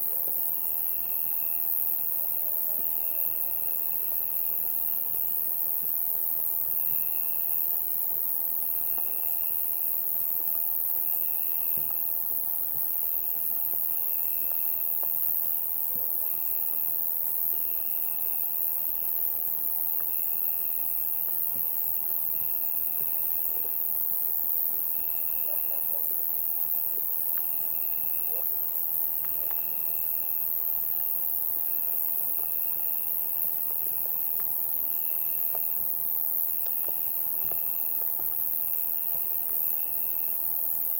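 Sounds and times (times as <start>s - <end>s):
cricket trilling in pulses: 0.0s - 40.9s
insect chorus shrilling: 24.8s - 40.5s.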